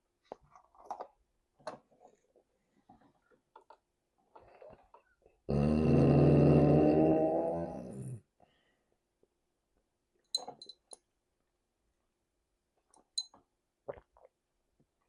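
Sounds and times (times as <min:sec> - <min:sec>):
long deep burp: 0:05.5 - 0:08.2.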